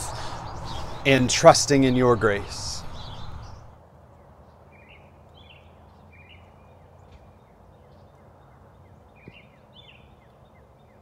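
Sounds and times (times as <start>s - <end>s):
low background rumble: 0.0s - 3.8s
songbirds chirping: 0.0s - 11.0s.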